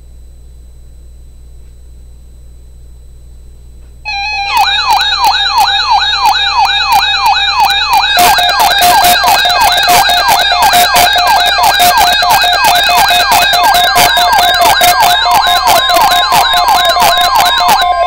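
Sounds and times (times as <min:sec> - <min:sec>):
electronic siren wailing: 0:04.1 - 0:18.0
steady pulsing alarm tone: 0:04.1 - 0:18.0.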